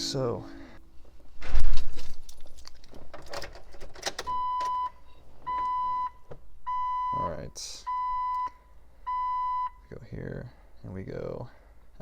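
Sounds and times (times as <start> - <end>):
clattering handling noises: 1.1 - 4.8.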